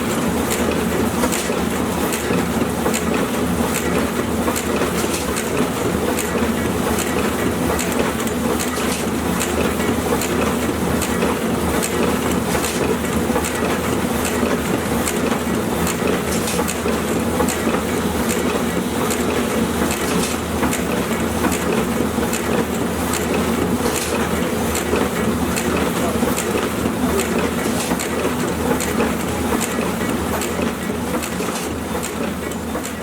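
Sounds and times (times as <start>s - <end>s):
printing press hum: 0.0s - 33.0s.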